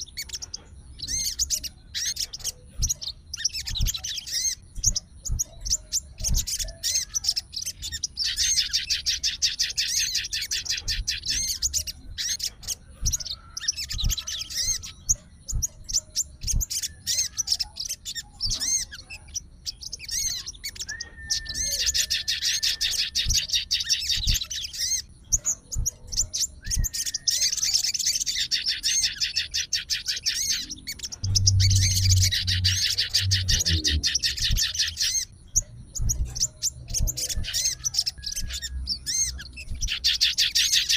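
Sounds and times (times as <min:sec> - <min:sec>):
bird singing high trills: 0:00.0 - 0:40.9
low hum: 0:30.8 - 0:37.6.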